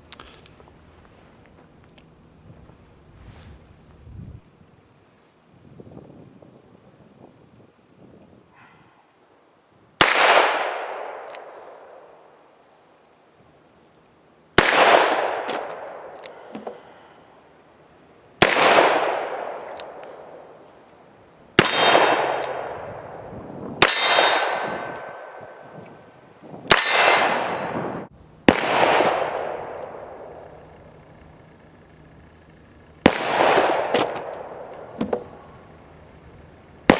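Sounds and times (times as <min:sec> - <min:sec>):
revolver shots echoing: 0:10.0 - 0:11.9, 0:14.6 - 0:16.9, 0:18.4 - 0:20.6, 0:21.6 - 0:26.1, 0:26.7 - 0:36.1
lingering metallic ring: 0:23.8 - 0:25.8, 0:26.7 - 0:28.1.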